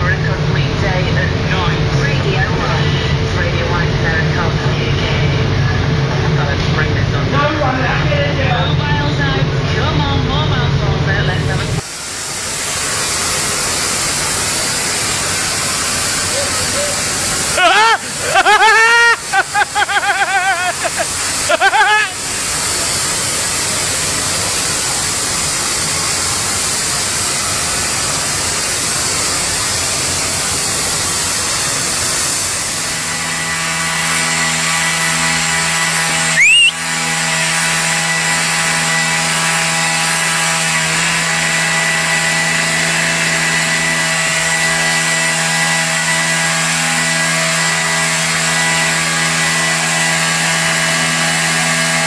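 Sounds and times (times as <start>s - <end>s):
motor whine: 11.2s - 52.0s
power tool grinding: 11.8s - 52.0s
loud pitch sweep: 32.8s - 37.0s.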